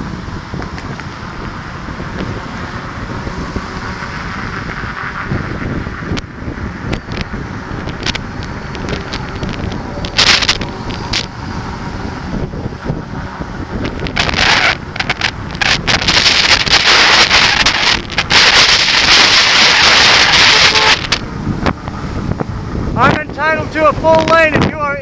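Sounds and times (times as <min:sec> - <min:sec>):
road traffic noise: 0:00.0 - 0:25.0
wind buffeting microphone: 0:00.0 - 0:25.0
short sharp burst: 0:14.2 - 0:21.2.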